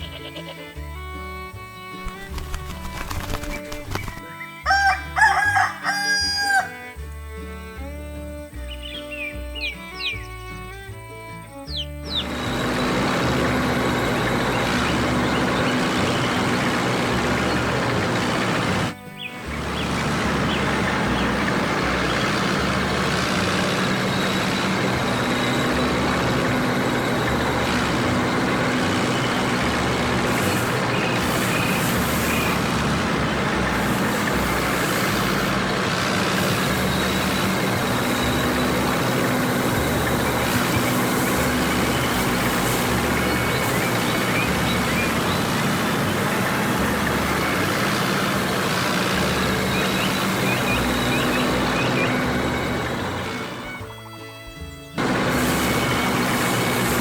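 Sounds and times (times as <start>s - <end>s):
heavy machine engine throbbing: 10.5s - 54.0s, 55.0s - 57.0s.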